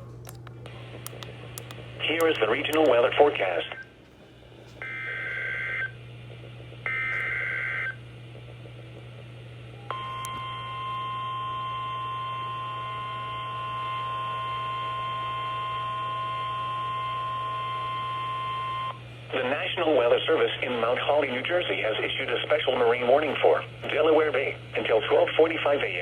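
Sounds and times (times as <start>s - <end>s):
steady warning alarm tone: 4.8s - 6.0s, 9.8s - 19.0s.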